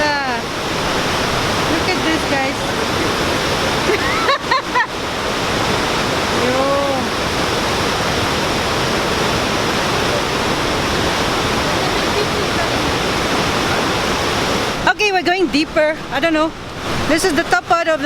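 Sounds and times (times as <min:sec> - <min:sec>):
roar of waterfall: 0:00.0 - 0:18.0.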